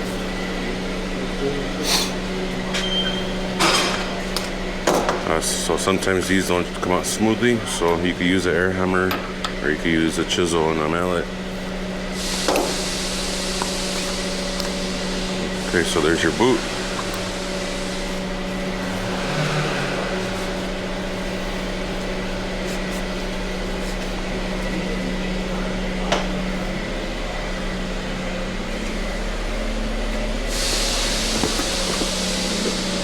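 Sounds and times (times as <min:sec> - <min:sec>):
shop machine hum: 0:00.0 - 0:33.0
loud even hiss: 0:30.5 - 0:33.0.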